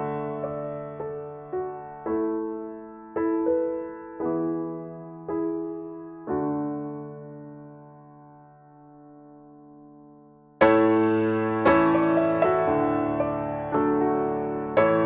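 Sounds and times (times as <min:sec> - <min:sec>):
slow solo piano chords: 0:00.0 - 0:15.0.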